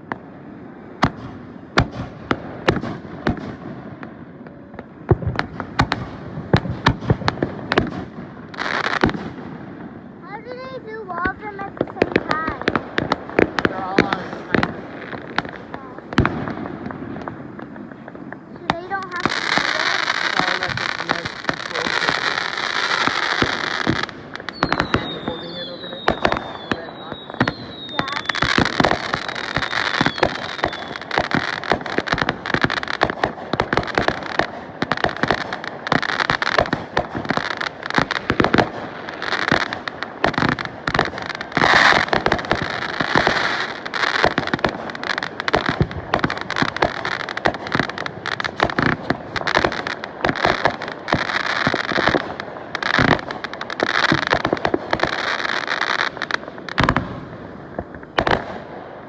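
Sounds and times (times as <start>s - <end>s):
fireworks bangs and cracks: 0.0s - 59.0s.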